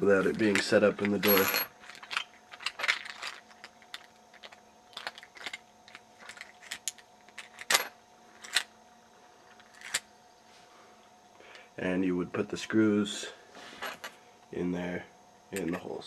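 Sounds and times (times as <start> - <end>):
metal parts clicking and tapping: 0.2 - 8.7, 15.6 - 15.9.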